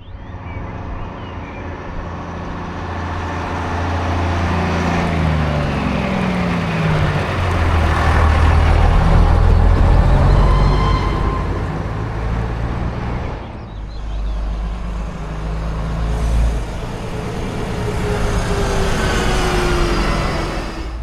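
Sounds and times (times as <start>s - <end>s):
bus diesel engine rumbling: 0.0s - 21.0s
slowly falling tone: 16.7s - 21.0s.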